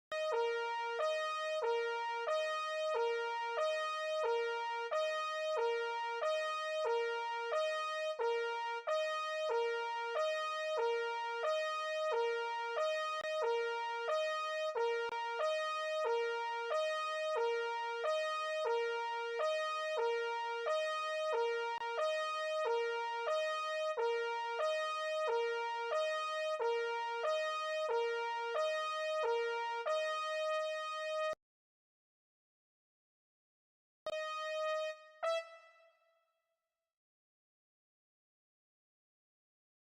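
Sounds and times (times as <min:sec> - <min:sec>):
two-tone synthesized alarm: 0:34.1 - 0:35.7.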